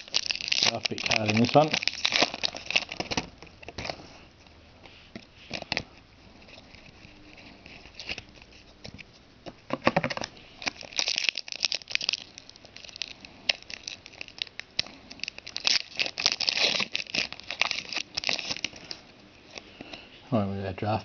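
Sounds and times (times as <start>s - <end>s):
foil wrapper crinkling: 0.0s - 4.0s, 10.1s - 20.0s.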